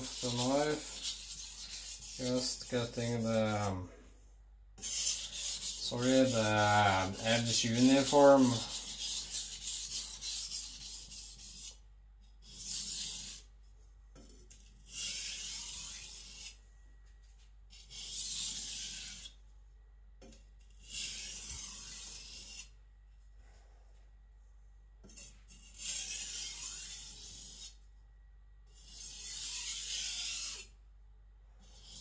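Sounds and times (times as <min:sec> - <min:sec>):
knife scraping on whetstone: 0:00.0 - 0:03.7, 0:04.8 - 0:11.8, 0:12.4 - 0:13.5, 0:14.4 - 0:16.6, 0:17.7 - 0:19.4, 0:20.7 - 0:22.8, 0:25.0 - 0:27.8, 0:28.7 - 0:30.8, 0:31.6 - 0:32.0.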